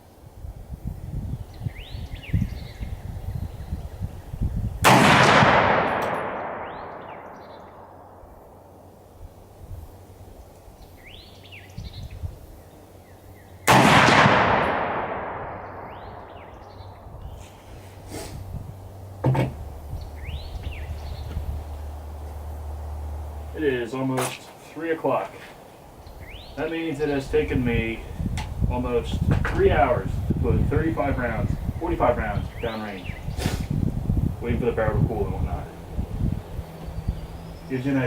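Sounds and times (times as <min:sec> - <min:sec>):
birds chirping faintly: 0:00.0 - 0:04.9, 0:06.3 - 0:13.7, 0:15.4 - 0:38.0
rifle shots with echo: 0:04.8 - 0:08.2, 0:13.7 - 0:16.5.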